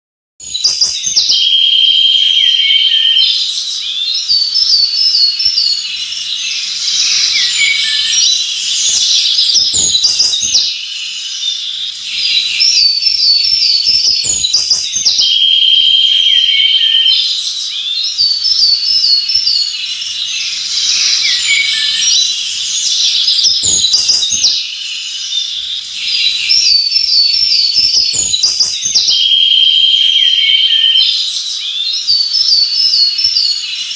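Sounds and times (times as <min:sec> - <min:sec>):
songbirds chirping and trilling: 0:00.4 - 0:33.9
steady high hiss: 0:03.6 - 0:13.4, 0:17.4 - 0:30.1.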